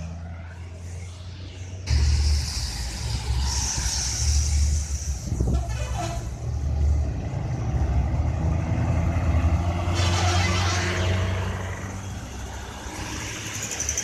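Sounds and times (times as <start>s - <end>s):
bus diesel engine running: 0.0s - 14.0s
hiss: 0.6s - 6.3s.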